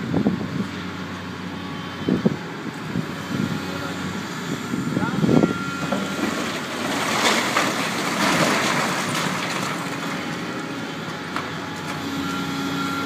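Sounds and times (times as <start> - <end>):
excavator diesel engine: 0.0 - 13.0
demolition debris crunching: 5.7 - 12.0.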